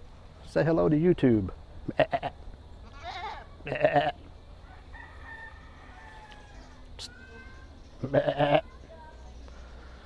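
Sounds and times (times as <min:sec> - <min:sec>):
goat bleating: 0:01.9 - 0:04.3, 0:08.0 - 0:08.7
rooster crowing: 0:04.6 - 0:06.9.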